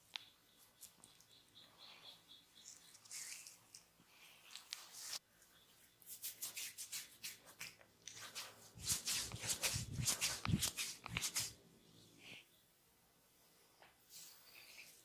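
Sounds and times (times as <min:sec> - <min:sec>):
hands rubbing oiled skin: 0:06.1 - 0:11.6.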